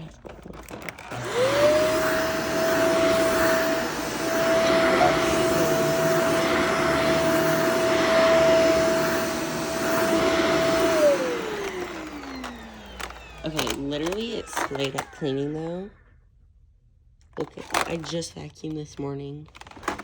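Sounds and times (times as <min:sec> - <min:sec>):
vacuum cleaner motor whine: 0:00.0 - 0:15.7.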